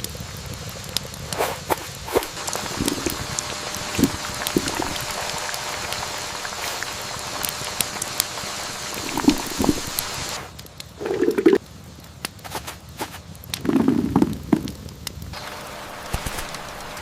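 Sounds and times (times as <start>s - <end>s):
watery hiss: 1.2s - 11.6s
small drips and pops: 2.4s - 15.4s.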